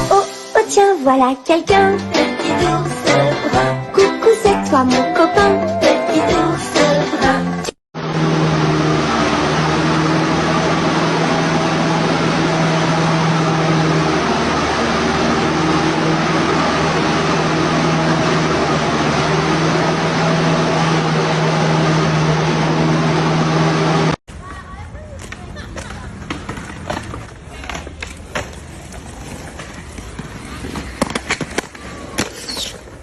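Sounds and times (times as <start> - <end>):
motor running loudly: 8.0 - 24.2.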